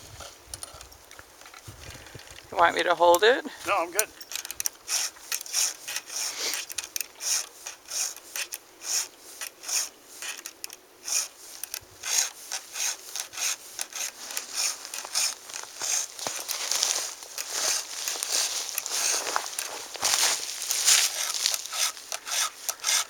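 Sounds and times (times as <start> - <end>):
file rasping on chainsaw teeth: 4.8 - 11.3, 12.0 - 16.2, 18.8 - 19.3, 20.9 - 23.0.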